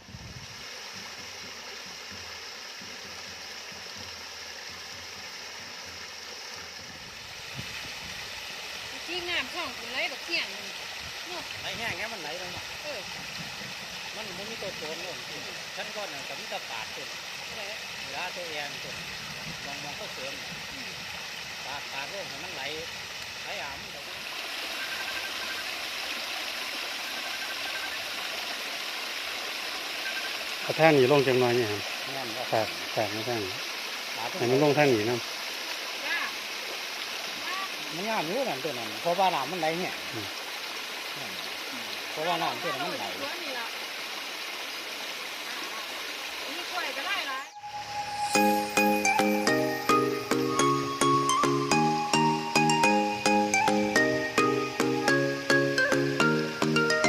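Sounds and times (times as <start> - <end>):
water running down waterfall: 0.0 - 57.0
faint high trill: 47.4 - 50.4.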